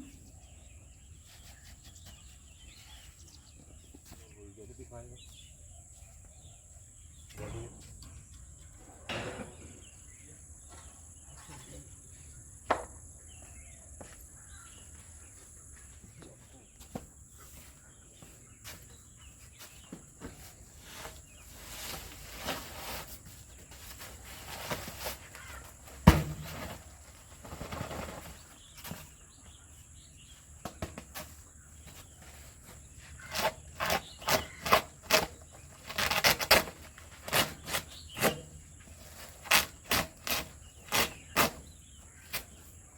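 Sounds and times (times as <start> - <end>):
knocks and thumps: 25.9 - 28.4.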